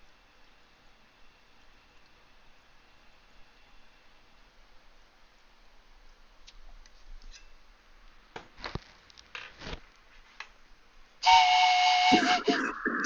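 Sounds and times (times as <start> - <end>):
soft rustles: 8.4 - 10.6
loud steady whistling tone: 11.2 - 13.0.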